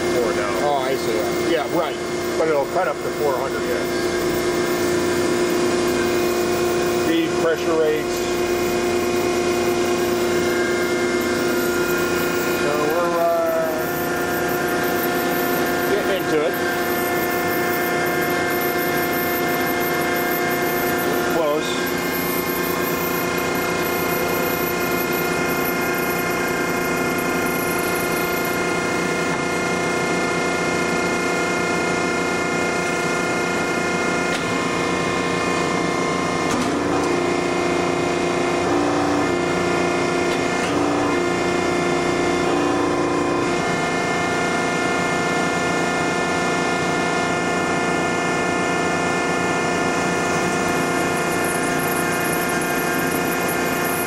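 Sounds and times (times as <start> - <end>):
band saw cutting metal bar: 0.0 - 29.5.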